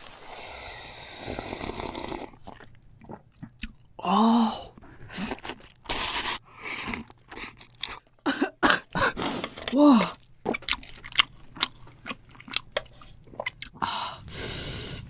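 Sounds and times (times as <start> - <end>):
steady hiss: 0.0 - 1.7, 14.3 - 15.0
crunchy biting and chewing: 10.4 - 13.8.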